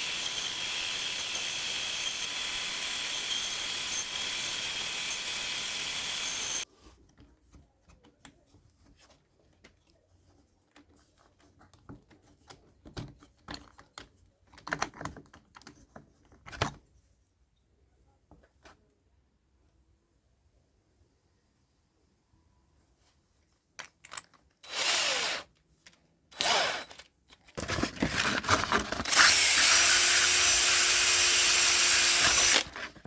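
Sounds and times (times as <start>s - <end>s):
bandsaw running: 0.0s - 6.6s, 24.7s - 25.5s, 26.4s - 27.0s, 27.6s - 32.9s
wood and tools clicking and knocking: 6.8s - 17.0s, 23.8s - 33.0s.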